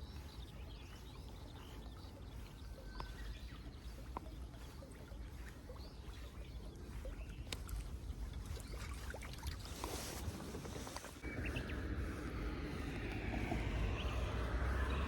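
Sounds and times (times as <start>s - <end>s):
steady low rumble: 11.2s - 15.0s.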